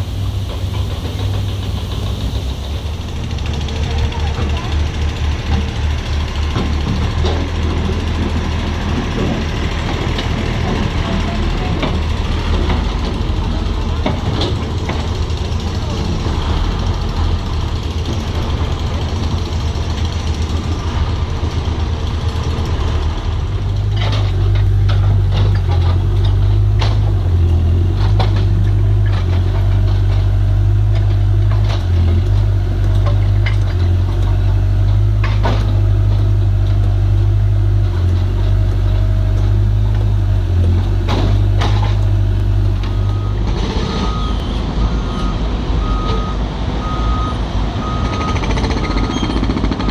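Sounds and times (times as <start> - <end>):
diesel engine running: 0.0 - 49.9
reversing alarm beeping: 42.6 - 49.9.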